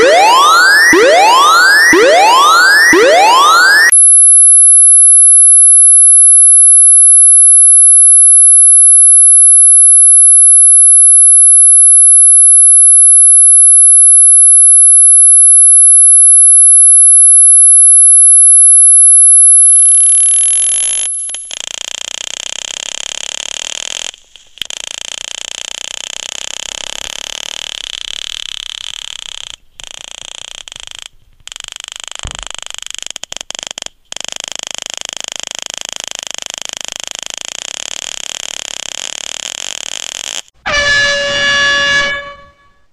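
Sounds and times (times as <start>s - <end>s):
high-pitched electronic tone: 0.0s - 21.5s.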